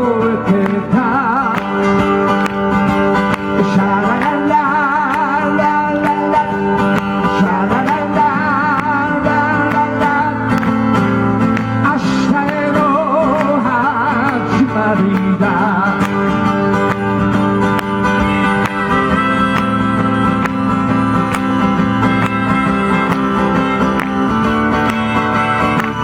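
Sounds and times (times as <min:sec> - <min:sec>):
man singing: 0:00.0 - 0:02.4, 0:03.4 - 0:10.7, 0:11.7 - 0:16.6
acoustic guitar: 0:00.0 - 0:26.0.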